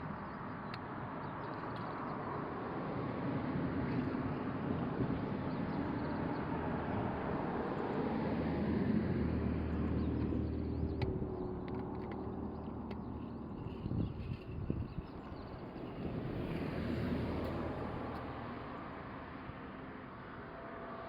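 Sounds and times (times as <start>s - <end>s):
vehicle passing: 15.6s - 21.0s.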